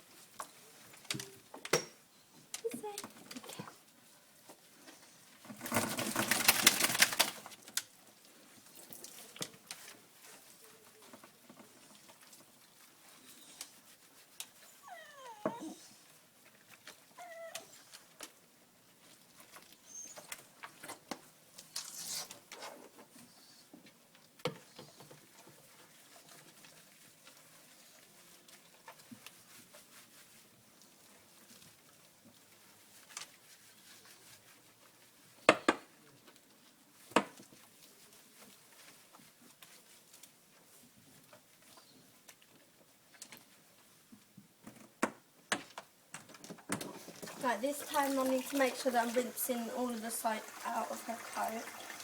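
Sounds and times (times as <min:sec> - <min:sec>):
wet dog shaking its coat: 0:05.6 - 0:07.6, 0:47.0 - 0:52.0.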